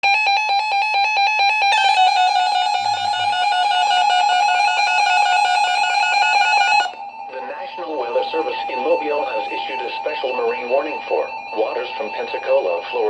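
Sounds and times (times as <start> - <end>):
electronic alert tone warbling: 1.7 - 7.0.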